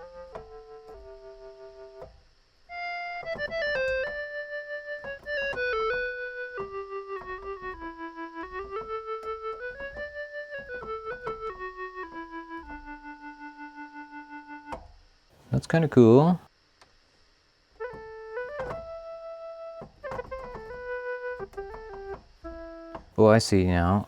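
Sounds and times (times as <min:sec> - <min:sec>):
synth keyboard melody: 0:00.0 - 0:02.0, 0:02.7 - 0:14.8, 0:17.8 - 0:23.0.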